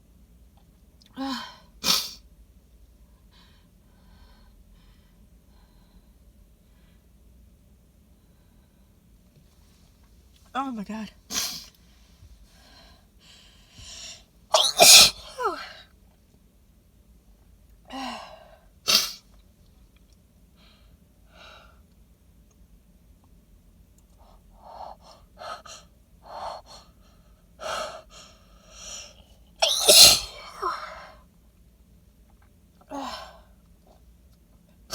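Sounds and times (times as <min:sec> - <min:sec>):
woman sneezing: 0:14.5 - 0:15.8, 0:29.6 - 0:30.8.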